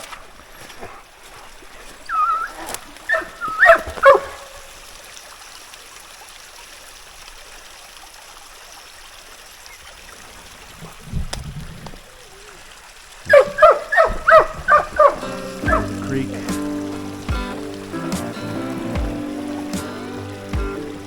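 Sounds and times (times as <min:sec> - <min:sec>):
creek water trickling: 0:00.0 - 0:21.0
dog whining and yipping: 0:02.1 - 0:04.4, 0:13.3 - 0:16.0.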